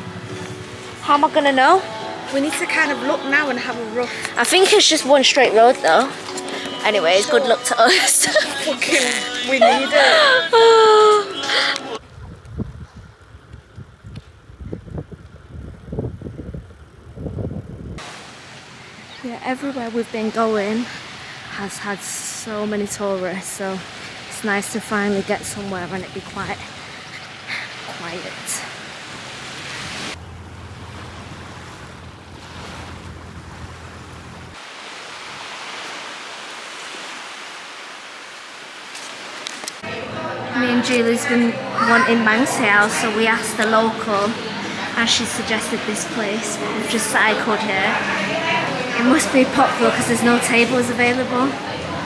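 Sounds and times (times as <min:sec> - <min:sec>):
wind buffeting microphone: 0:12.0 - 0:18.2.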